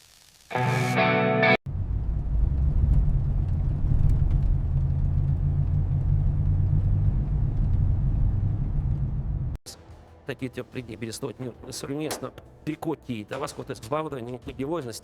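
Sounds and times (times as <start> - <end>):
car engine running: 1.7 - 9.6.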